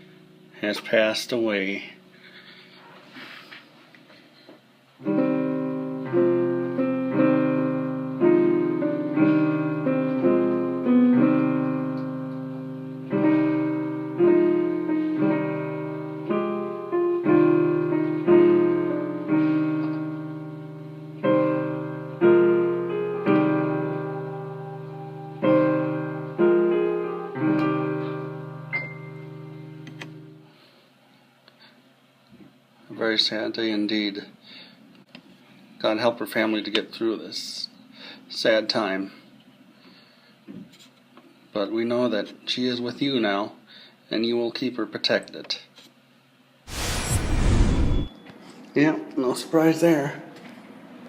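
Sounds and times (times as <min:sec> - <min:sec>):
piano chords: 0:05.0 - 0:30.4.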